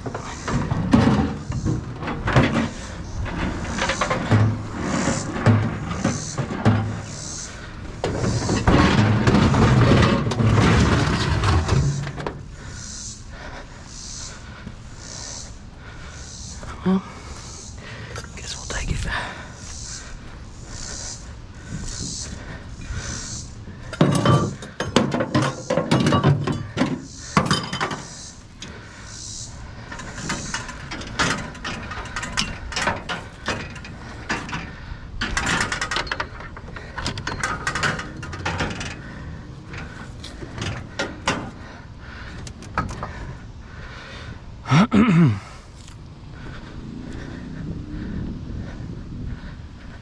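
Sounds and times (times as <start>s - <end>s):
scrap metal clanking and rattling: 0.0s - 12.8s, 21.6s - 29.0s, 29.6s - 43.5s.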